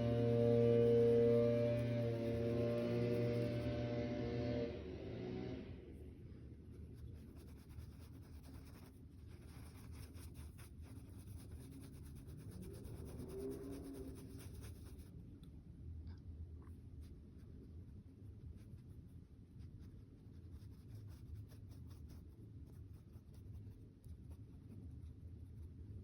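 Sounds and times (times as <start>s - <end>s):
art tool scratching a surface: 0.0s - 3.9s, 6.9s - 15.1s
low steady hum: 0.0s - 26.0s.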